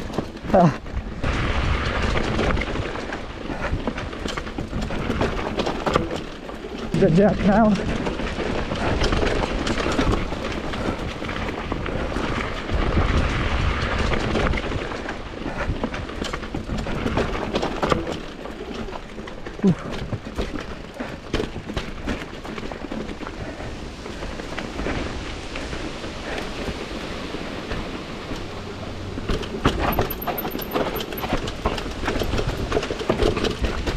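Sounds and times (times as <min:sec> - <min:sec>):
bike knocks and rattles: 0:00.0 - 0:26.8, 0:27.4 - 0:33.9
constant rushing noise: 0:00.0 - 0:33.9
tyres rolling over dirt and rocks: 0:00.0 - 0:33.9
deep rumble: 0:06.9 - 0:18.1.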